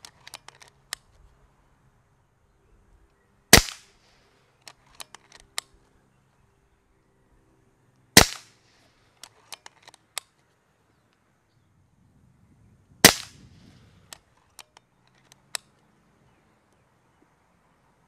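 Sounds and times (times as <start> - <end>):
air rifle shots: 3.5 - 4.1, 8.2 - 8.7, 13.0 - 14.1.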